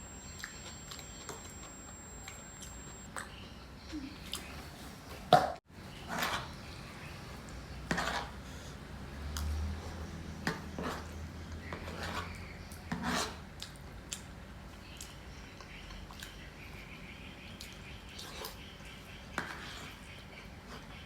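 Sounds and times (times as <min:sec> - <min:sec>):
cutlery scraping on a plate: 0:07.9 - 0:08.4, 0:10.5 - 0:13.4.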